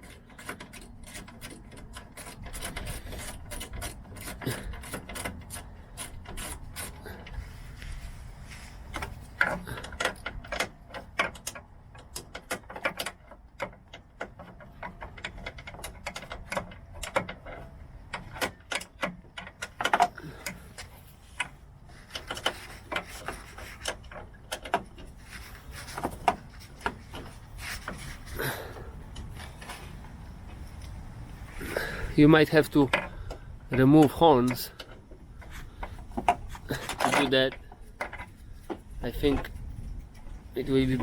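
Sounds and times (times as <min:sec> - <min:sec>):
ratchet clicking: 0:00.0 - 0:07.2
metal and plastic parts handled: 0:00.0 - 0:41.0.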